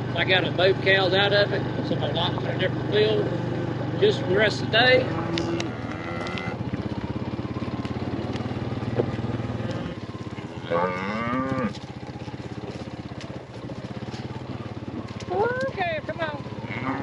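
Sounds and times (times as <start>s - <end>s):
vehicle engine running: 0.0s - 17.0s
cow mooing: 5.0s - 6.6s, 9.3s - 11.8s, 16.5s - 17.0s.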